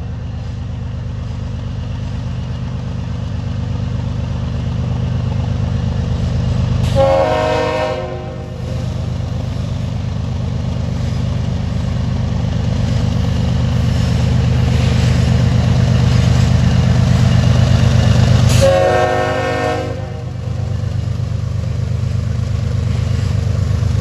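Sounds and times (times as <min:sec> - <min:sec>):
diesel locomotive rumbling: 0:00.0 - 0:24.0
locomotive air horn blast: 0:06.8 - 0:09.0, 0:18.5 - 0:20.7.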